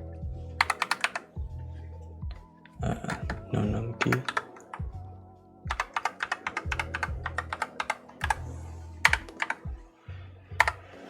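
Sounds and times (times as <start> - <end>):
mechanical keyboard typing: 0.6 - 1.3, 3.0 - 4.8, 5.7 - 8.4, 9.0 - 9.7, 10.6 - 10.8.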